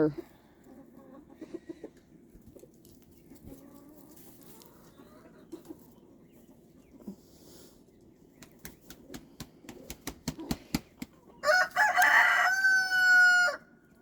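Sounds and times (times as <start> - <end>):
rooster crowing: 11.4 - 13.7.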